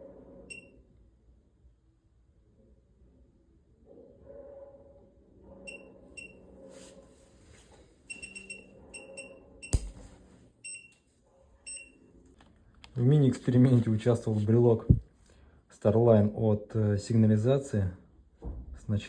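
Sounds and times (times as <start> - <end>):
sharp crack: 9.8 - 10.2.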